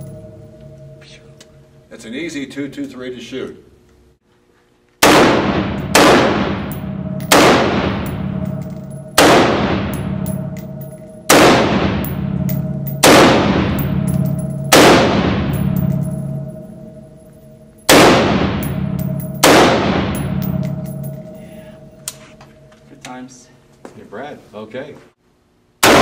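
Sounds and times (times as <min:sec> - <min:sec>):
rifle shots indoors: 0:05.0 - 0:21.4, 0:25.8 - 0:26.0.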